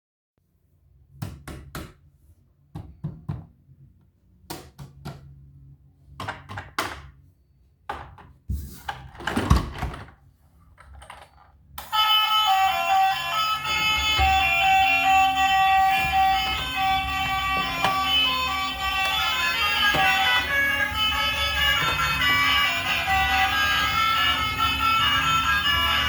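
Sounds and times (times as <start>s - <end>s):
toys and packaging knocking: 15.8s - 20.6s, 21.4s - 23.0s.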